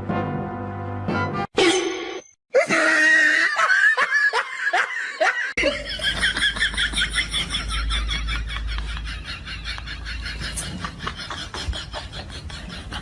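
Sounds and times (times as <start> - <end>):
rapid laughter: 3.0 - 13.0.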